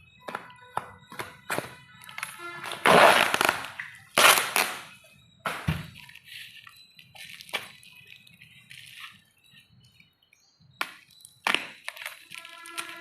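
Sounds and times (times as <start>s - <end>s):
scattered clicks and knocks: 0.0s - 2.4s
packaging rustling and tearing: 2.1s - 4.9s, 11.5s - 13.0s.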